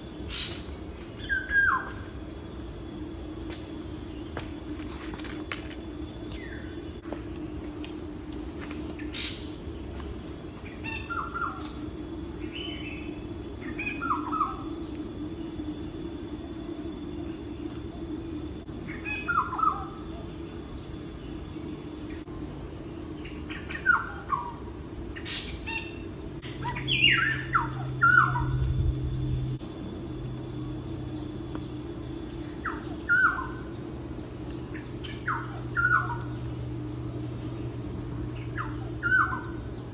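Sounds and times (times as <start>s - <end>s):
insect trill: 0.0s - 39.9s.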